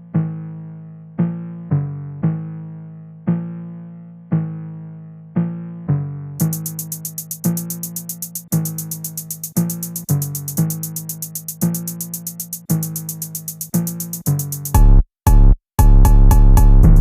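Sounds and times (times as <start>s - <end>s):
bass-heavy electronic section: 6.4s - 17.0s
electronic music with synth: 6.4s - 17.0s
fast hi-hat pattern: 6.4s - 17.0s.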